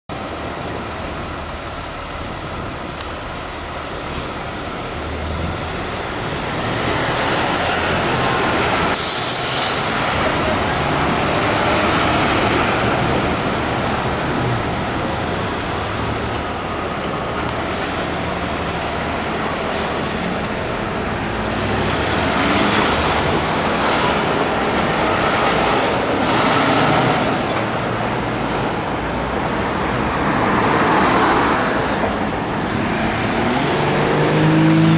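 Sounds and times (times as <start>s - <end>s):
heavy truck engine running: 0.1s - 34.9s
street traffic: 0.1s - 34.9s
air brakes hissing: 4.1s - 5.4s, 8.8s - 10.5s, 18.9s - 21.4s.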